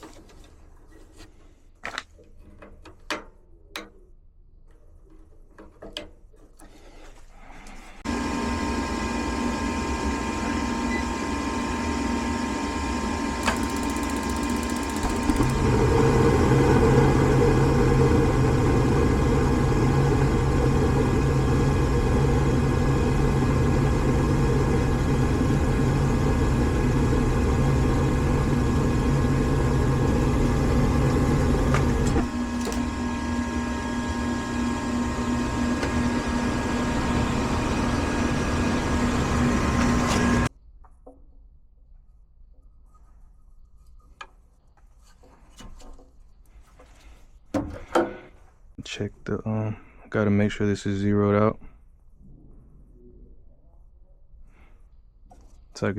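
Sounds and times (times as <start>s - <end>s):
hvac equipment hum: 7.4s - 40.5s
deep motor hum: 15.0s - 40.5s.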